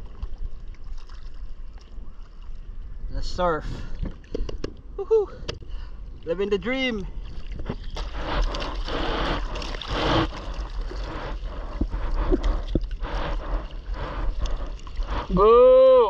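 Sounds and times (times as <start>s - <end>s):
sea water sloshing and splashing: 0.0s - 3.0s, 6.0s - 15.4s
wind buffeting microphone: 6.5s - 16.0s.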